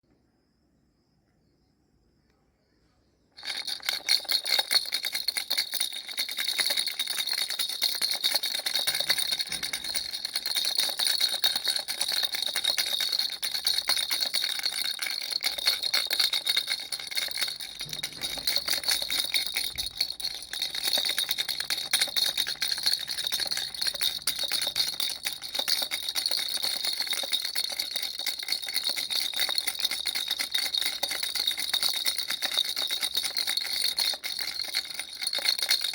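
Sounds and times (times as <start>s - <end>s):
baby rattle jingling: 3.4s - 35.9s.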